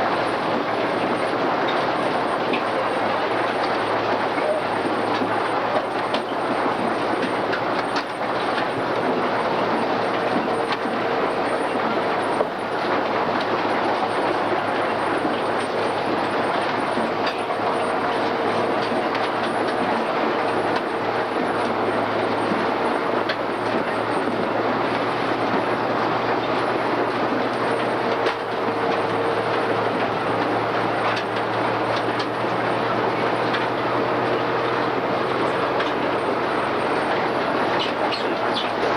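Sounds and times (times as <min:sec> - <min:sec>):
harvester clattering rattle: 0:00.0 - 0:38.9
tractor diesel engine under load: 0:00.0 - 0:38.9.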